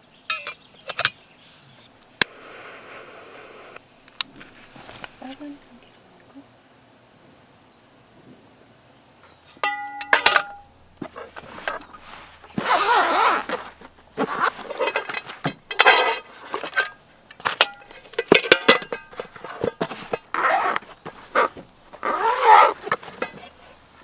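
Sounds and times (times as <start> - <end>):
ringing metallic clink: 9.6 - 10.7
hard objects clinking and knocking: 9.6 - 23.6.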